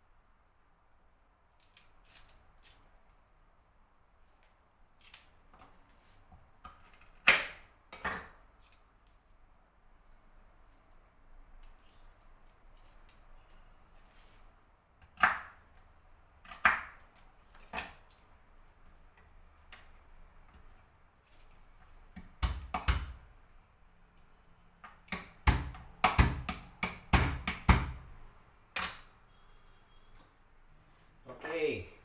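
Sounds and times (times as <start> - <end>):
knocks and thuds of kitchen work: 22.3 - 23.3, 25.1 - 28.1.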